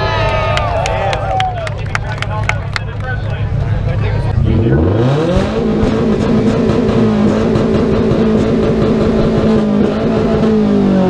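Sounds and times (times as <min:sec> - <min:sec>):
car engine at high revs: 0:03.3 - 0:11.0.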